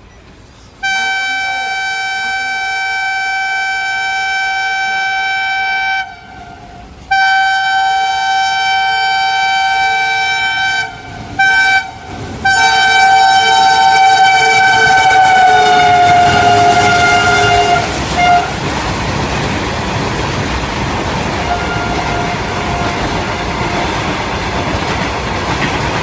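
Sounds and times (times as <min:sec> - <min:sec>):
locomotive air horn blasts: 0:00.8 - 0:18.6, 0:21.4 - 0:24.0.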